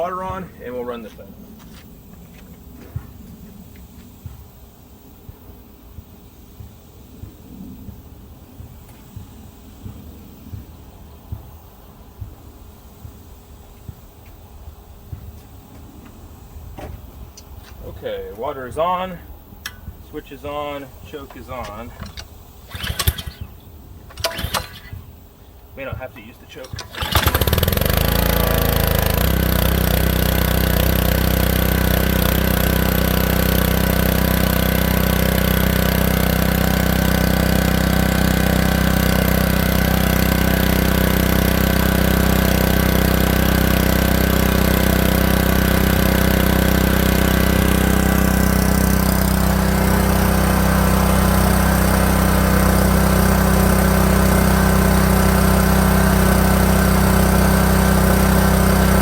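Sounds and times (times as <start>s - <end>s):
pressure washer engine starting: 18.4s - 25.2s, 25.8s - 59.0s.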